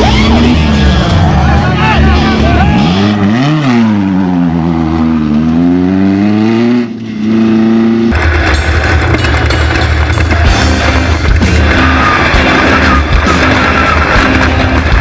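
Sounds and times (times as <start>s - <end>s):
race vehicle engine accelerating: 0.0s - 15.0s
rough noisy sound: 7.2s - 15.0s.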